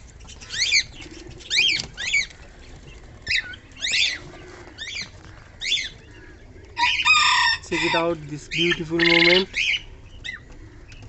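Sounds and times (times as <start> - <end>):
faint low pigeon coo: 0.0 - 11.0
high-pitched bird chirps: 8.5 - 10.4.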